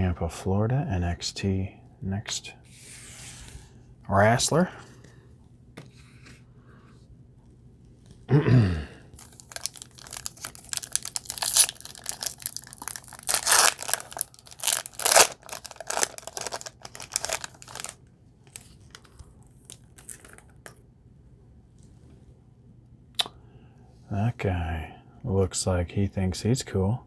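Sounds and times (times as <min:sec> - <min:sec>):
foil wrapper tearing and crinkling: 0:09.2 - 0:20.5.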